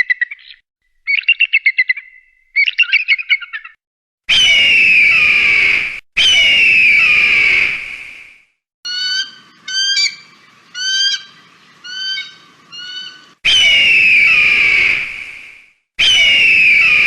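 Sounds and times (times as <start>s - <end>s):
kite calls: 8.9s - 17.0s.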